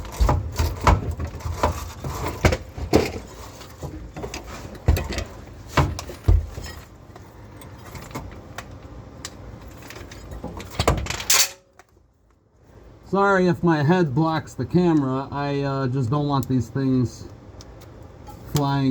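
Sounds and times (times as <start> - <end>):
metal clatter: 9.6 - 11.8
metal tools clinking: 9.6 - 11.8.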